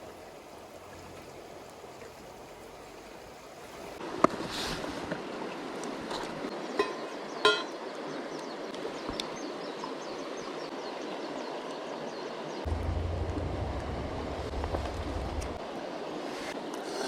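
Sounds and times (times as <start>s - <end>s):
low rumble on microphone: 12.7s - 15.6s
mountain stream rushing: 12.7s - 17.0s.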